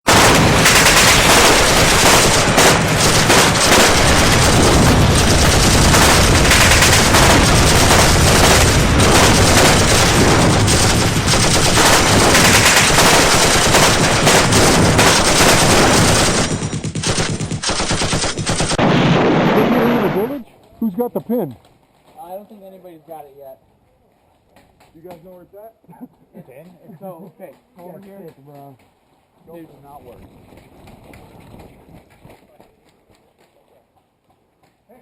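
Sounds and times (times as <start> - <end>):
automatic gunfire: 0.1 - 20.4.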